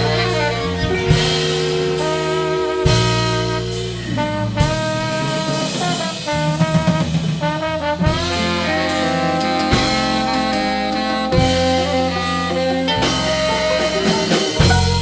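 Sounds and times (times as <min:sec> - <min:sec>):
accented drum hits: 0:00.0 - 0:08.8, 0:13.1 - 0:15.0
horns playing sliding melody: 0:00.0 - 0:15.0
klezmer punk band playing: 0:00.0 - 0:15.0.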